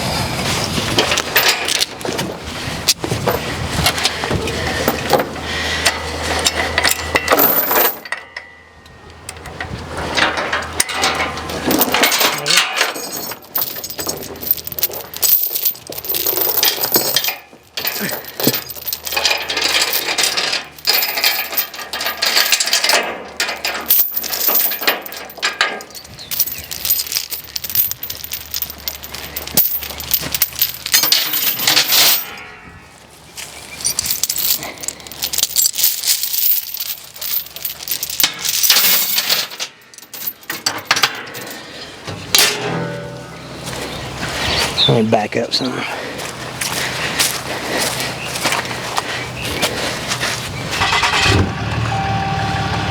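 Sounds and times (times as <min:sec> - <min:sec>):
metallic clinking and rattling: 0:00.9 - 0:02.4, 0:03.2 - 0:08.6, 0:09.3 - 0:32.7, 0:33.6 - 0:44.6.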